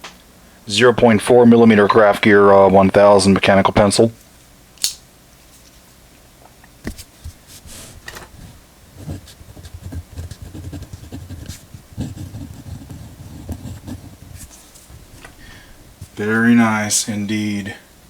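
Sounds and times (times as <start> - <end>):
pencil writing on paper: 9.0 - 14.6.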